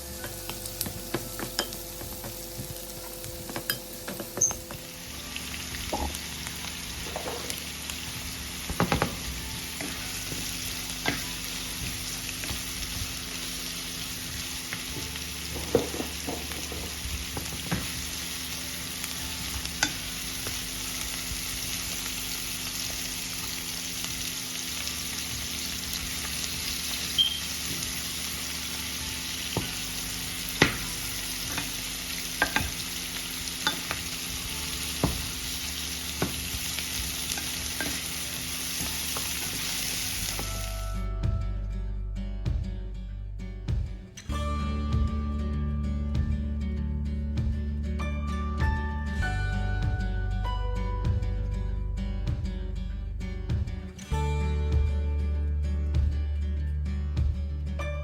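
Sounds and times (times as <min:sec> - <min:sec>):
food sizzling in a pan: 0:00.0 - 0:41.0.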